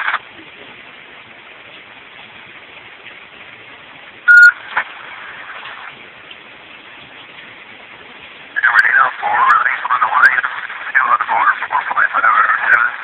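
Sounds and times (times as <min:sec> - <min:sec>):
faint hiss: 0:00.0 - 0:13.0
electronic beep: 0:04.3 - 0:04.7.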